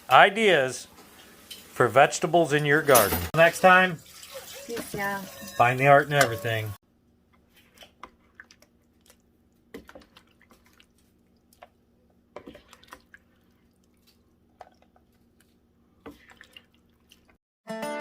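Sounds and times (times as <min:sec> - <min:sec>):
faint water drips: 0:03.4 - 0:05.7, 0:08.1 - 0:17.4.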